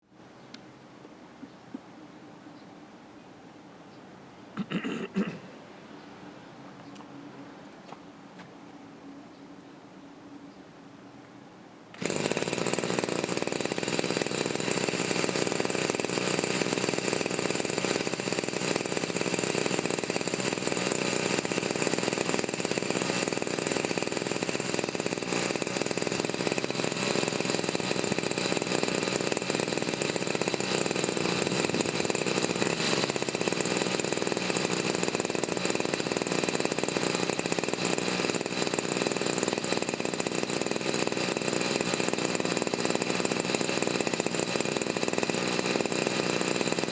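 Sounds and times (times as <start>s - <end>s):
brush cutter engine running: 11.9s - 46.9s.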